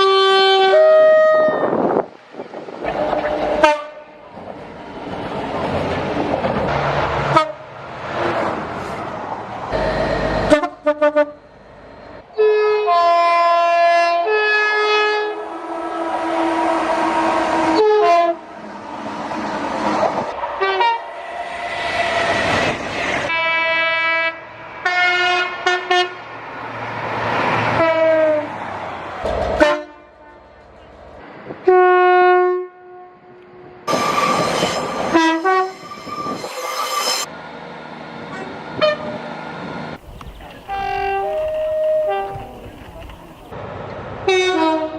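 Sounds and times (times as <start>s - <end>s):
two-tone train horns: 0.0s - 1.9s, 2.9s - 4.2s, 7.2s - 7.7s, 9.8s - 11.5s, 12.3s - 18.5s, 20.6s - 21.1s, 23.3s - 26.3s, 27.6s - 28.5s, 29.3s - 30.6s, 31.6s - 37.3s, 38.3s - 39.2s, 40.6s - 43.1s, 44.2s - 44.9s
passing trains: 0.0s - 44.9s.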